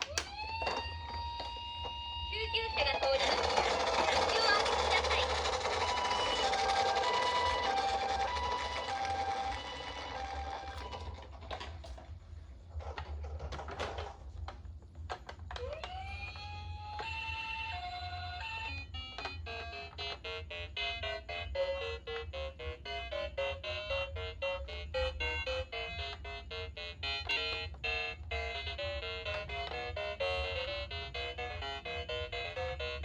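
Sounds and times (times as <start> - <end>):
toy electronic siren wail: 0.0 - 11.3, 15.6 - 22.2.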